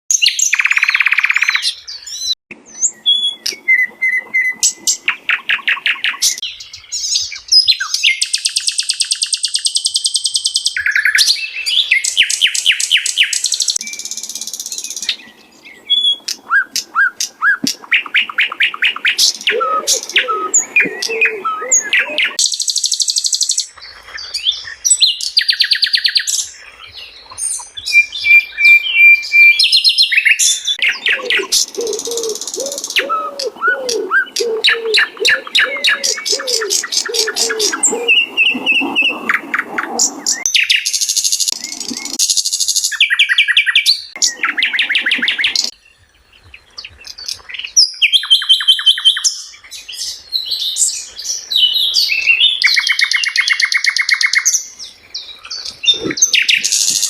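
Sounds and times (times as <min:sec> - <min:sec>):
flycatcher singing trills and whistles: 0:00.1 - 0:39.4
low bird warbling: 0:15.2 - 0:22.4, 0:30.8 - 0:45.8.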